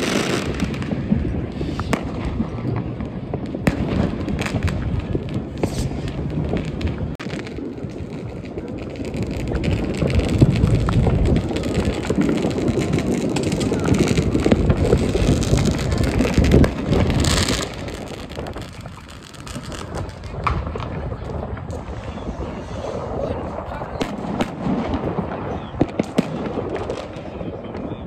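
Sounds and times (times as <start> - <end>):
crowd voices: 0.0 - 28.0
fireworks crackling and popping: 0.0 - 28.0
wind rumbling on microphone: 0.0 - 28.0.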